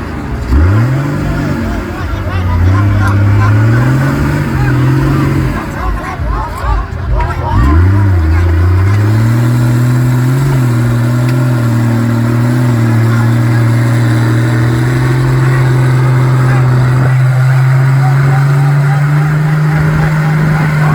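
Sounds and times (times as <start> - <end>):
vehicle engine revving high: 0.0 - 20.9.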